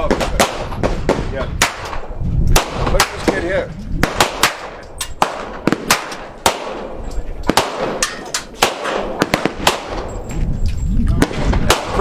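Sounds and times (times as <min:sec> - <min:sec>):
gunshots with echo: 0:00.0 - 0:10.2, 0:11.2 - 0:12.0.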